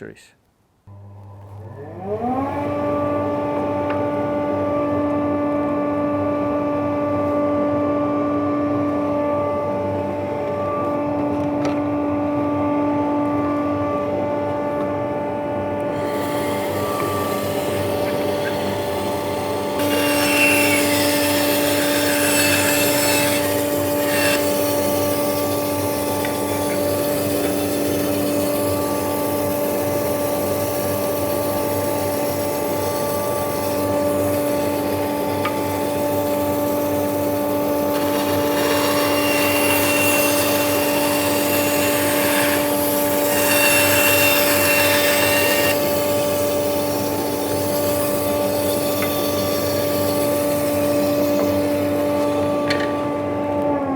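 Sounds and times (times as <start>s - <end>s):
band saw motor hum: 0.9s - 53.9s
saw blade cutting wood: 15.8s - 53.2s.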